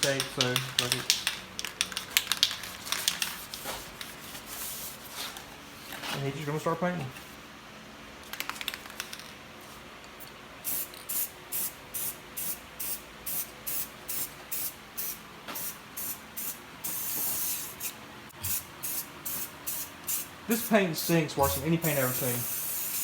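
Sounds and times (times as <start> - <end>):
spray paint can spraying: 10.6 - 20.7, 21.4 - 23.0.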